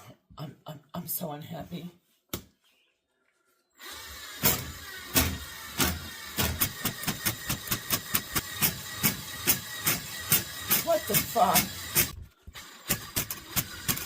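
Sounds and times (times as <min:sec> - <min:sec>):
drain auger motor running: 0:03.8 - 0:14.0.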